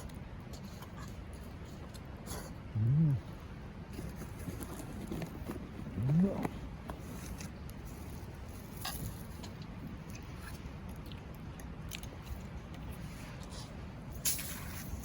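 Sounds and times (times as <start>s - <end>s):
low rising voice: 2.7s - 3.4s, 5.9s - 6.6s.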